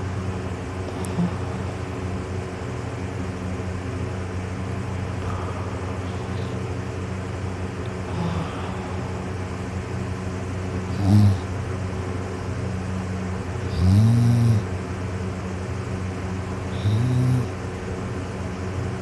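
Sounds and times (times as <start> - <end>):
steady low hum: 0.0 - 19.0
person snoring: 8.0 - 9.2, 10.9 - 11.5, 13.7 - 14.7, 16.7 - 17.5.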